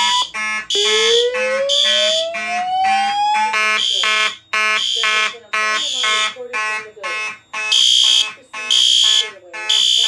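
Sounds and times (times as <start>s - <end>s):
pulsed fire alarm horns: 0.0s - 10.0s.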